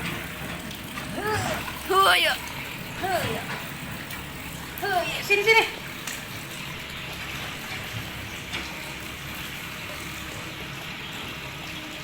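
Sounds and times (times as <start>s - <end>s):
water running from a tap: 0.0s - 12.0s.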